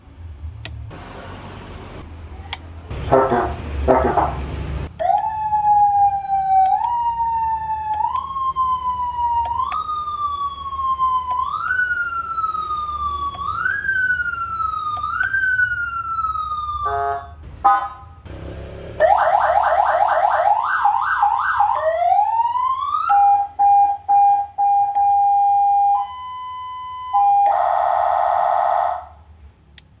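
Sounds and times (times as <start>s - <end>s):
buzzing horn blast: 2.9s - 4.9s, 16.8s - 19.0s
electronic ambulance siren: 2.9s - 29.3s.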